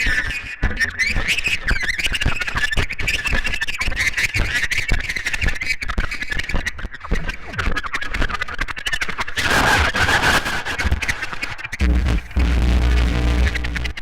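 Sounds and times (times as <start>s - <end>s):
dense crackling: 11.8s - 14.0s
low thumps: 11.8s - 14.0s
warbling feedback squeal: 11.8s - 14.0s.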